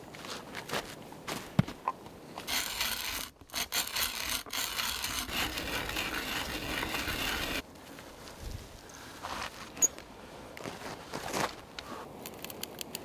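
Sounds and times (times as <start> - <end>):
hand tool rasping into wood: 2.5 - 7.6.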